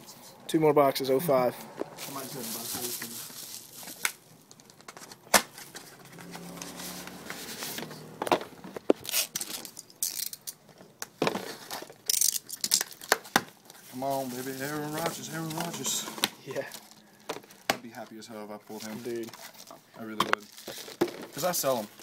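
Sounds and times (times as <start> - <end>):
plastic wrap and card packaging tearing: 1.9 - 8.1, 8.8 - 10.5, 20.4 - 22.0.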